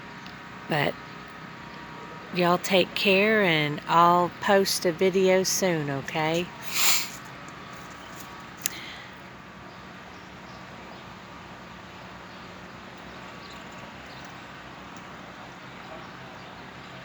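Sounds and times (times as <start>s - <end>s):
outdoor background noise: 0.0s - 17.0s.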